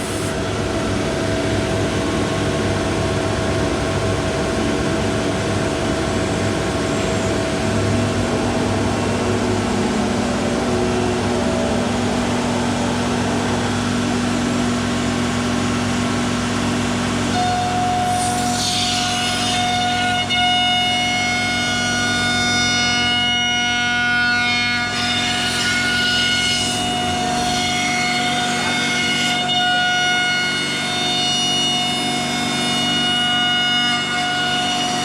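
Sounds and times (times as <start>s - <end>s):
cnc router machining wood: 0.0s - 35.0s.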